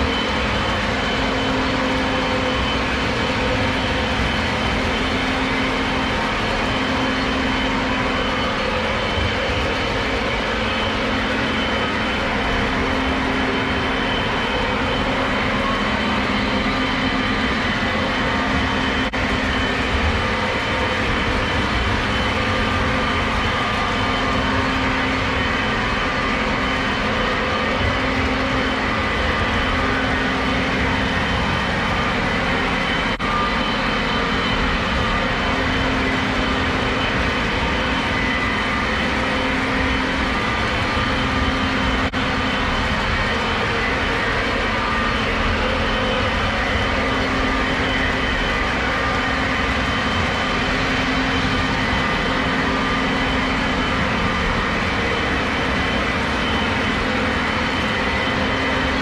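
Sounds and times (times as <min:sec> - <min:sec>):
faint steady tones: 0:00.0 - 0:59.0.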